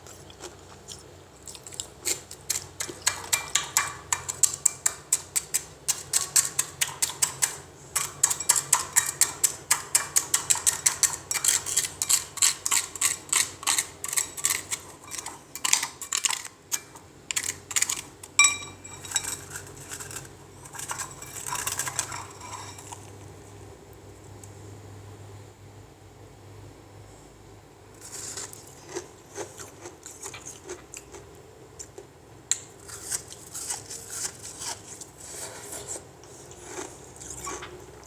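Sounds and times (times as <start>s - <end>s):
ice crunching being chewed: 0.0s - 3.2s, 28.0s - 32.1s, 32.8s - 38.0s.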